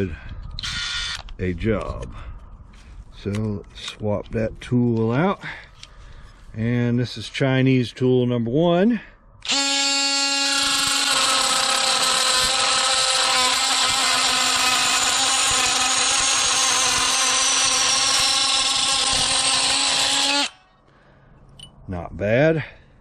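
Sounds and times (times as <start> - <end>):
oscillating multi-tool buzzing: 0.6 - 1.3, 9.4 - 20.7
blade grinding through steel: 9.5 - 20.6.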